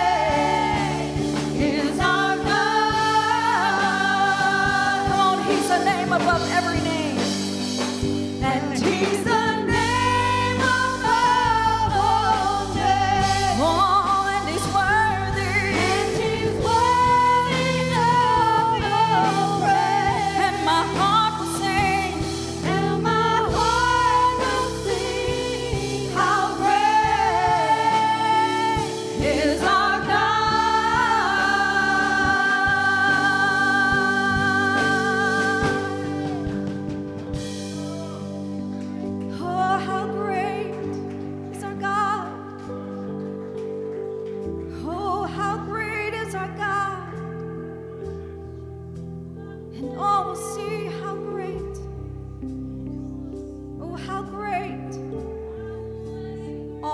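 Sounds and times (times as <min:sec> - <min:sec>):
bass line: 0:00.0 - 0:41.1
person singing: 0:00.0 - 0:43.4
sustained keyboard chords: 0:00.0 - 0:56.9.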